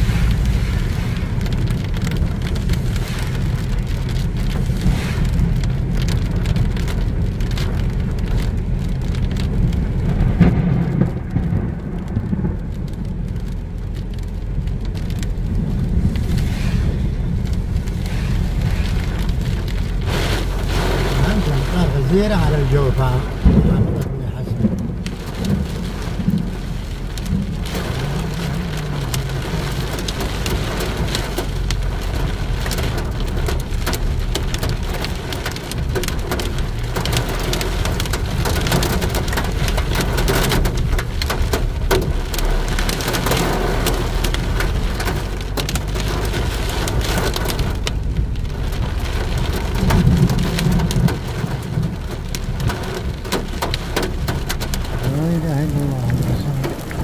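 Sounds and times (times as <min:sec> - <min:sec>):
heavy rain falling: 0:00.0 - 0:57.0
low rumble: 0:00.0 - 0:57.0.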